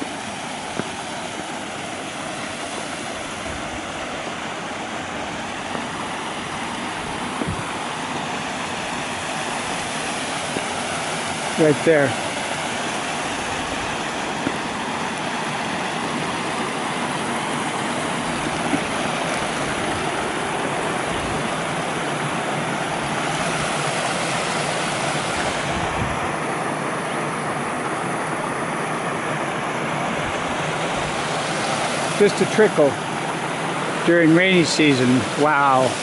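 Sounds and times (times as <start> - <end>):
waterfall splashing: 0.0 - 36.0
wind buffeting microphone: 5.7 - 7.9, 25.3 - 26.4.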